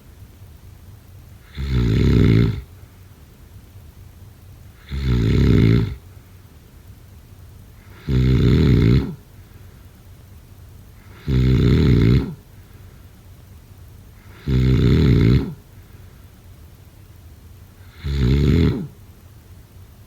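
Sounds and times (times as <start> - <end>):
person snoring: 1.4 - 2.7, 4.8 - 6.0, 7.8 - 9.3, 11.0 - 12.4, 14.2 - 15.7, 17.8 - 19.0.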